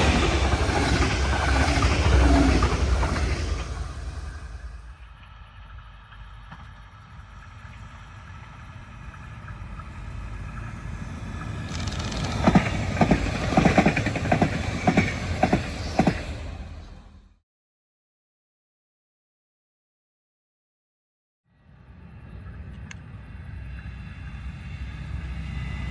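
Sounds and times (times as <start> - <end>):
train passing: 0.0 - 17.4, 21.6 - 25.9
train wheels clacking over joints: 11.4 - 16.2.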